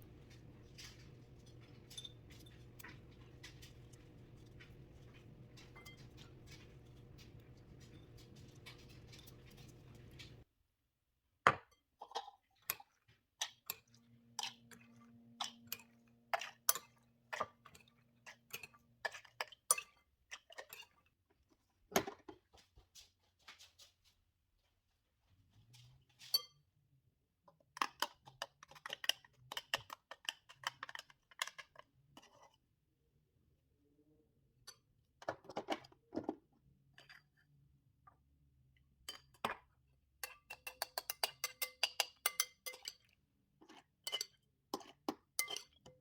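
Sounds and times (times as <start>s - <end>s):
dishes and utensils clinking: 0.0s - 10.4s, 40.2s - 43.1s, 43.7s - 46.0s.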